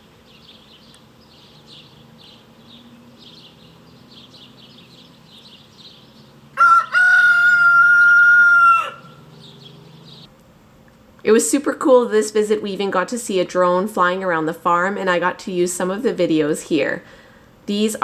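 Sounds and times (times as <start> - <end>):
rooster crowing: 6.5 - 9.6.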